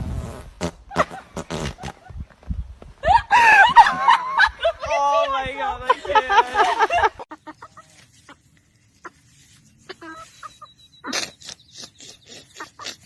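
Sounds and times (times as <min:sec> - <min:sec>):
chicken clucking: 0:07.3 - 0:13.0.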